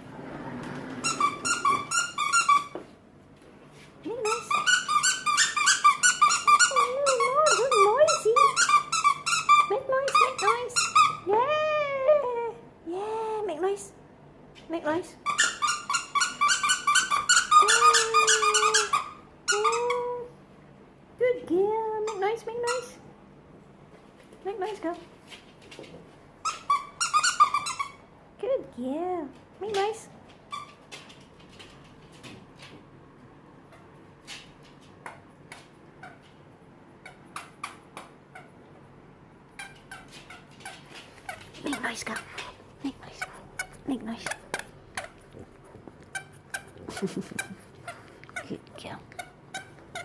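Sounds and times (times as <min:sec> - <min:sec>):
dog whining: 0:15.4 - 0:20.2
dog whimpering: 0:17.4 - 0:20.3.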